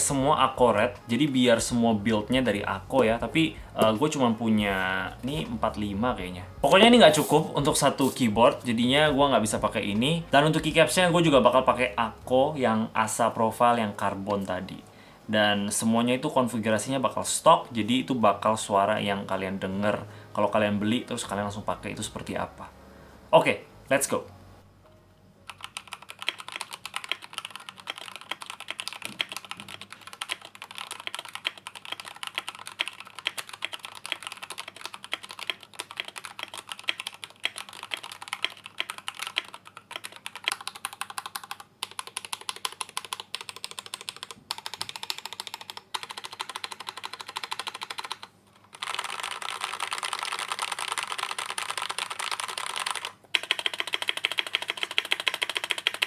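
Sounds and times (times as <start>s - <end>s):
keyboard key clacks: 25.5s - 49.2s.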